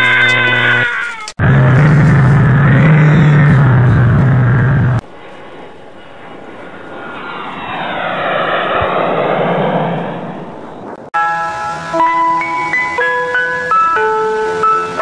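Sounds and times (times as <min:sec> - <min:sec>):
loud low-pitched sound: 0:01.4 - 0:11.1
airplane flying past: 0:01.6 - 0:15.0.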